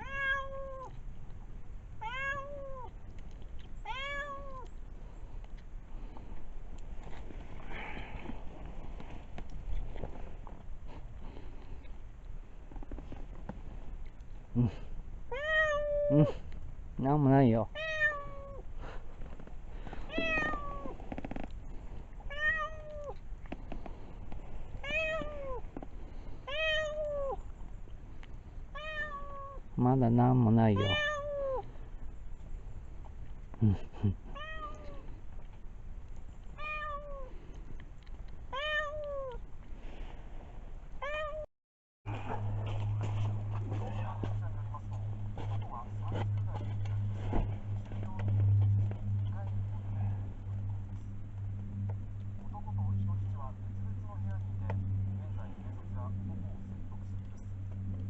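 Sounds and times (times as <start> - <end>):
cat meowing: 0.0 - 1.0, 2.0 - 2.9, 3.8 - 4.7, 15.3 - 16.4, 17.7 - 18.6, 20.1 - 21.0, 22.3 - 23.2, 24.8 - 25.6, 26.5 - 27.4, 28.8 - 29.6, 30.8 - 31.6, 34.4 - 35.0, 36.6 - 37.3, 38.5 - 39.4, 41.0 - 41.5.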